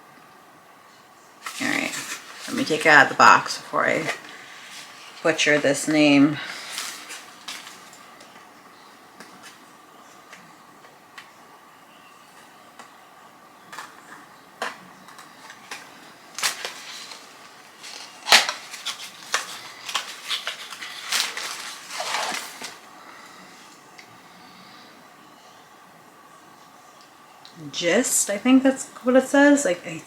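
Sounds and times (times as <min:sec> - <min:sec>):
cardboard box packaging clicks: 0:14.6 - 0:22.8.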